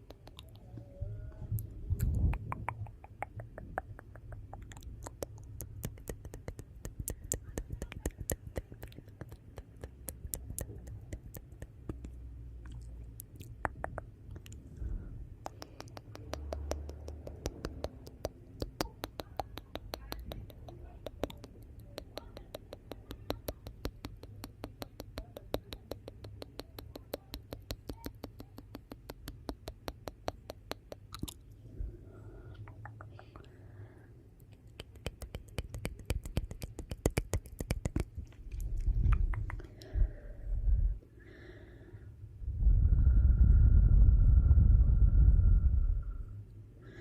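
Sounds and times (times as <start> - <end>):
low rumble of flames: 42.4 - 46.4.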